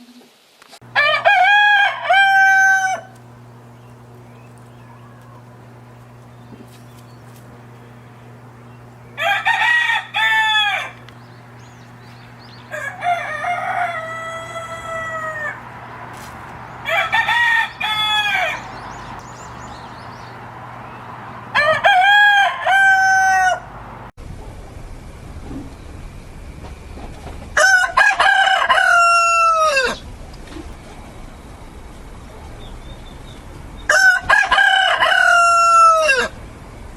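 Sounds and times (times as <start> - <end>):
faint steady hum: 0.0 - 36.9
rooster crowing: 0.8 - 3.2, 9.1 - 11.1, 12.2 - 20.4, 21.0 - 24.0, 27.6 - 30.0, 33.9 - 36.4.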